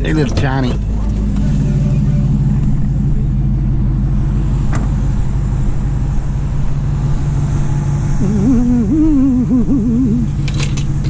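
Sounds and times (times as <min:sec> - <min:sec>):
truck engine running: 0:00.0 - 0:11.0.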